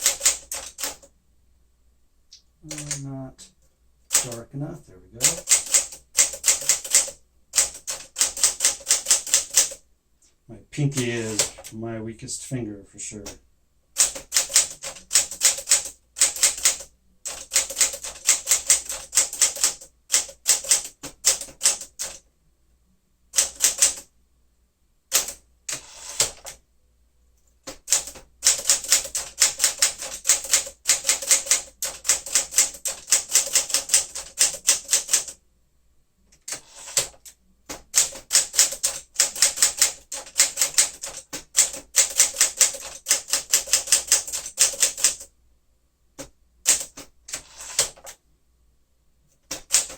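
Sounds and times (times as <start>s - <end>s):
manual typewriter keystrokes: 0.0s - 1.1s, 2.6s - 3.1s, 4.1s - 4.5s, 5.2s - 9.8s, 10.9s - 11.7s, 14.0s - 22.2s, 23.4s - 24.1s, 25.1s - 26.6s, 27.6s - 35.4s, 36.4s - 45.3s, 46.2s - 48.2s, 49.4s - 49.9s.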